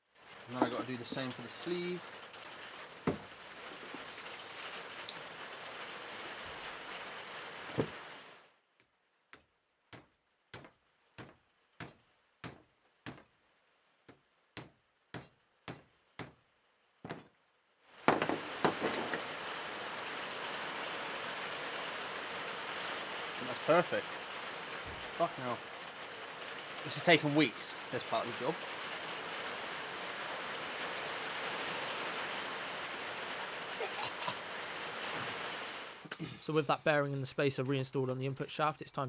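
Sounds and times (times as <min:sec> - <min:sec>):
steady hiss: 0:00.0 - 0:08.4, 0:17.9 - 0:37.7
single knocks: 0:18.1 - 0:19.2.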